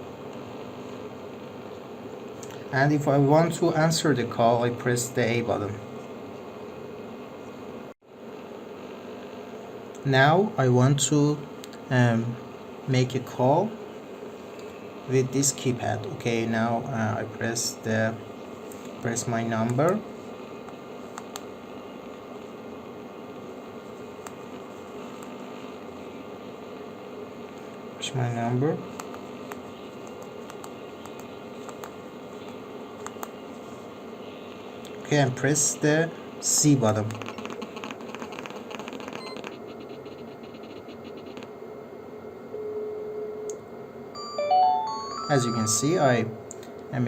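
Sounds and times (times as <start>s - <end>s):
faint hum: 0.0s - 47.0s
rapid buzzing clicks from speaker: 18.6s - 22.5s, 24.2s - 25.9s, 28.9s - 33.4s, 36.8s - 41.6s
steady single tone: 44.2s - 46.4s.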